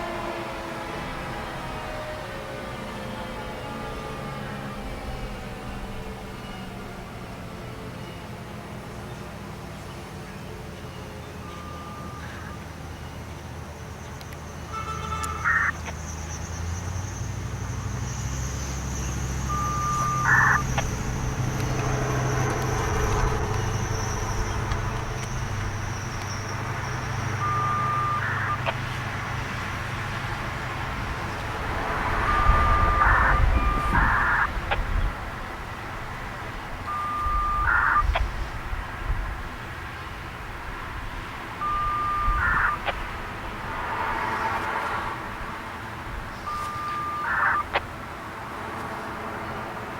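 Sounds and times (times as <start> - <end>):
road traffic passing: 0.0 - 49.9
short steady beep: 11.4 - 12.6, 19.4 - 21.0, 26.0 - 28.8, 32.2 - 34.5, 36.9 - 38.2, 41.6 - 42.9, 46.5 - 47.8
buzzy data chirp: 15.5 - 28.8, 32.2 - 34.5, 36.9 - 38.2, 41.6 - 42.9, 46.5 - 47.8.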